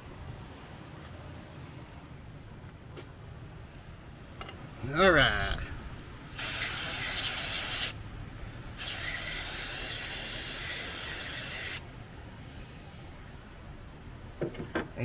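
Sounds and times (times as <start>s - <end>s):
aerosol spray hissing: 6.3s - 8.0s, 8.8s - 11.8s.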